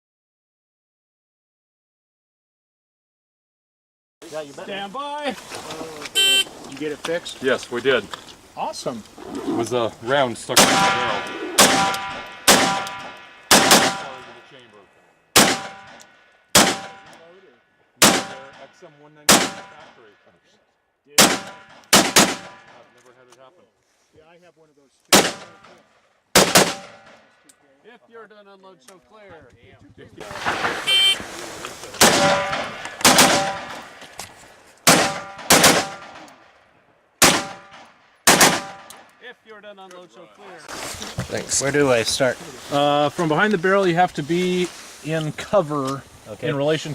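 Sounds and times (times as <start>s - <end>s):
rifle shots: 10.5s - 14.4s, 15.3s - 17.2s, 18.0s - 18.7s, 19.3s - 20.0s, 21.2s - 22.8s, 25.1s - 25.7s, 26.3s - 27.2s, 30.2s - 31.3s, 32.0s - 34.0s, 34.8s - 36.4s, 37.2s - 39.0s
metallic ring of steel target: 10.6s - 14.6s, 15.4s - 16.0s.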